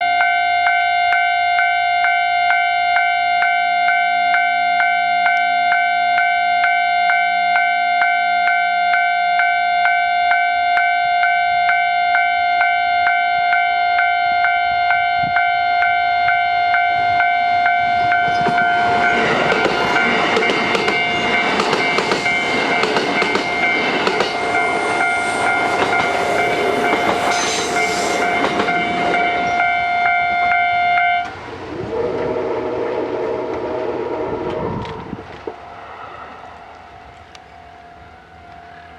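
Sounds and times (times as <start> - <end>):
level crossing bell ringing: 9.4 - 31.2
train wheels on rails: 15.8 - 38.9.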